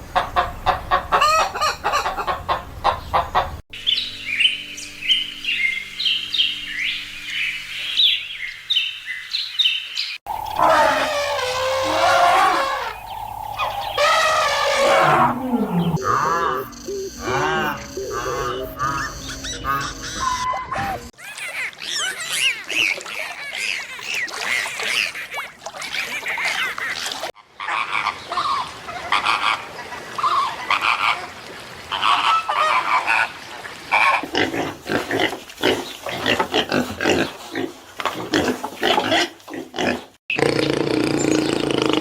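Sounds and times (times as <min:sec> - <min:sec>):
farm animals calling: 0:10.3 - 0:23.1.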